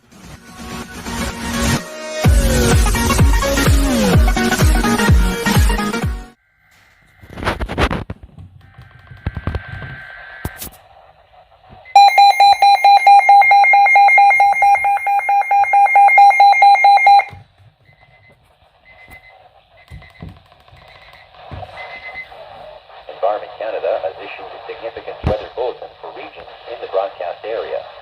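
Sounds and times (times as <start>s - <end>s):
loud electronic beep pulsing: 12.0s - 17.3s.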